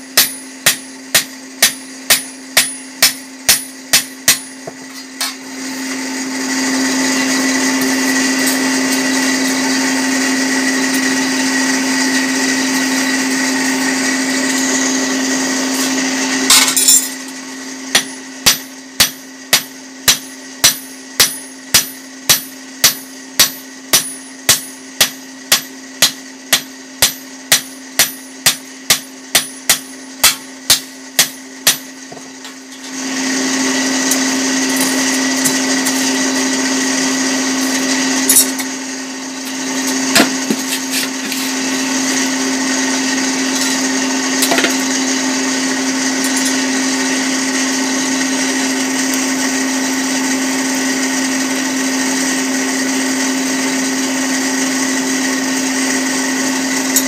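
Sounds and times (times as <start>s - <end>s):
hammer beating hot metal: 0.0s - 49.4s
forge blower hum: 0.0s - 57.0s
electric grinder running: 4.7s - 18.4s, 30.0s - 57.0s.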